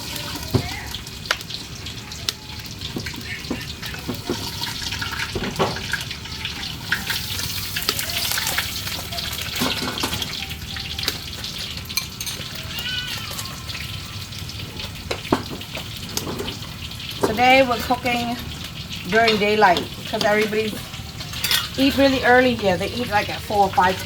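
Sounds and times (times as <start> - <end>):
pork sizzling in a pan: 0.0 - 24.0
spatula scraping a pan: 20.0 - 24.0.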